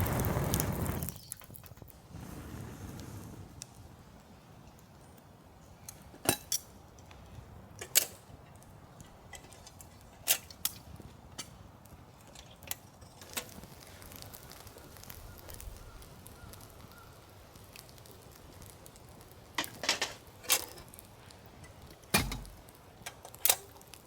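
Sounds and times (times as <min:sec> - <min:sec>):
sharp clicks and light knocks: 0:19.6 - 0:24.0.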